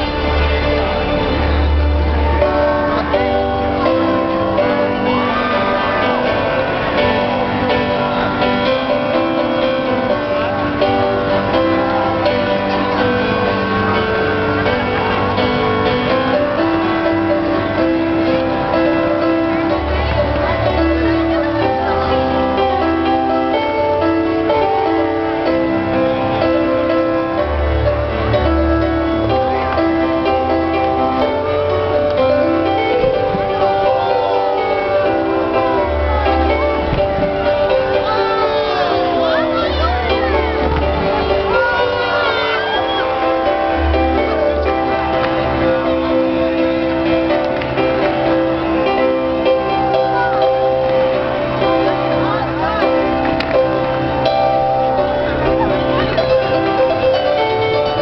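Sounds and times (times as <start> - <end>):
steady low bass: 0.0 - 9.0
music with long held chords: 0.0 - 58.0.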